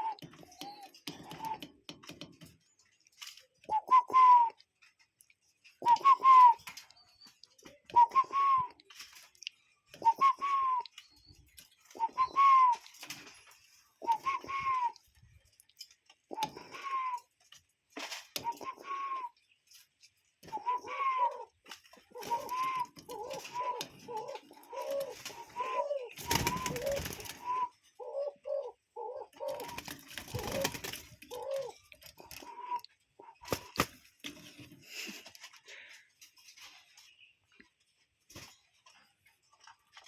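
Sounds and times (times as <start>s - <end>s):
cuckoo calling: 0.0s - 4.9s, 5.7s - 13.4s, 14.0s - 15.4s, 16.3s - 17.6s, 18.2s - 19.8s, 20.4s - 33.9s.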